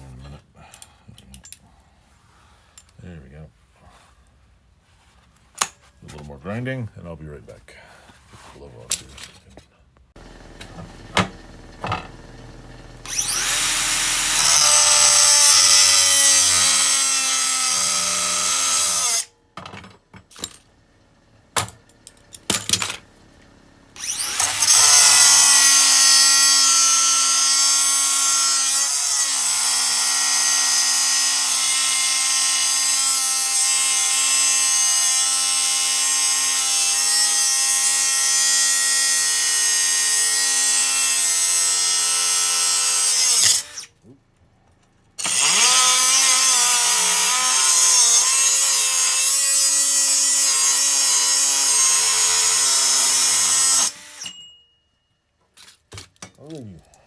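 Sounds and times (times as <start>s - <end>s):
electric grinder grinding steel: 10.2s - 19.3s, 24.0s - 44.0s, 45.2s - 54.4s.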